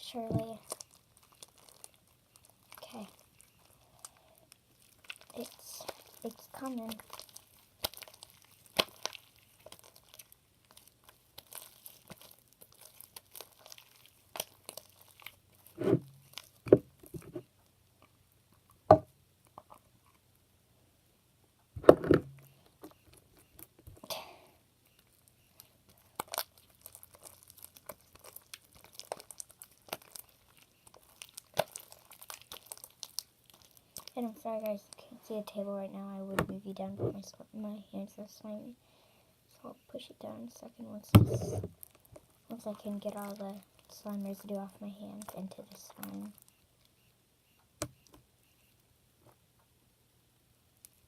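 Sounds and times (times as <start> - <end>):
wet slime crackles and clicks: 0.1 - 16.7, 25.0 - 35.0, 41.4 - 47.0, 50.8 - 51.0
thumps: 15.8 - 17.5, 18.9 - 19.1, 21.8 - 23.0, 41.1 - 41.8.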